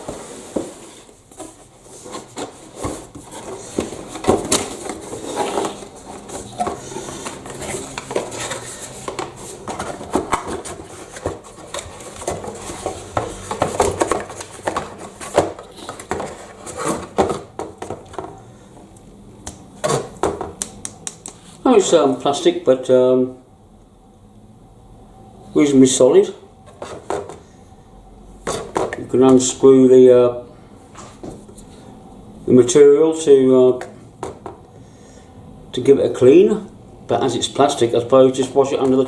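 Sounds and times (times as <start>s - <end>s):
unboxing handling noise: 0.0s - 21.4s.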